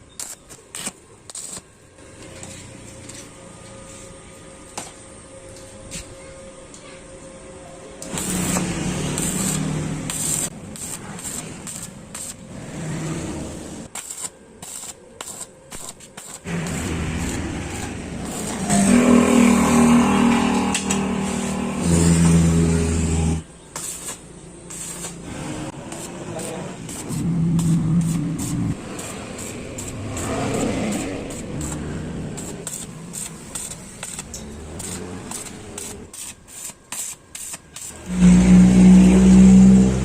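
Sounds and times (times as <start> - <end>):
motorcycle engine revving: 8.0 - 10.5, 16.5 - 23.5, 25.1 - 36.0, 38.0 - 40.0.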